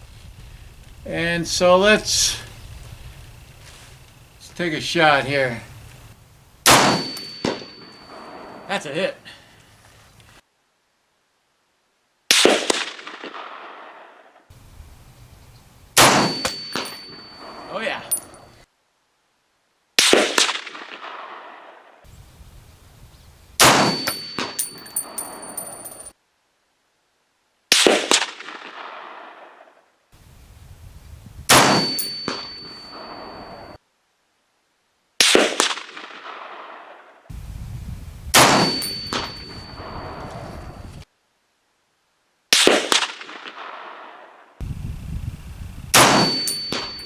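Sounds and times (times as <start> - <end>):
rifle shots: 4.8 - 8.7, 12.3 - 14.0, 16.0 - 18.6, 20.0 - 21.6, 23.6 - 25.8, 27.7 - 29.5, 31.5 - 33.8, 35.2 - 36.9, 38.3 - 41.0, 42.5 - 44.0, 46.0 - 47.0
bullets clanging on steel: 6.7 - 8.8, 16.0 - 18.6, 23.6 - 26.1, 31.5 - 33.8, 38.4 - 41.0, 46.0 - 47.0.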